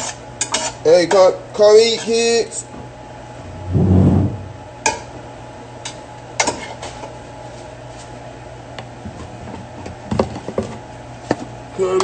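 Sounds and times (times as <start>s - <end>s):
steady low hum: 2.9s - 6.2s.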